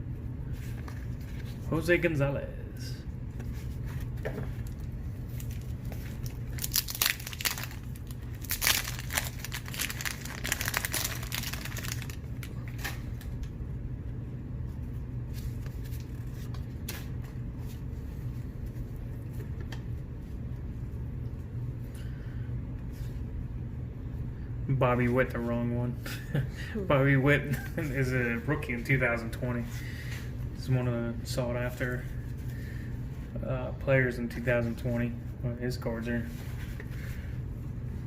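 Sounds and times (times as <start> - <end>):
steady low hum: 0.0 - 38.0
wrapper crinkling and tearing: 4.6 - 13.1.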